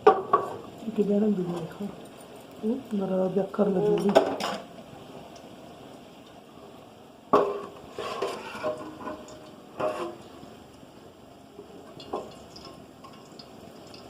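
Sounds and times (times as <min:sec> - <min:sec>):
utensils clanking on cookware: 0:03.8 - 0:04.7, 0:07.4 - 0:10.3.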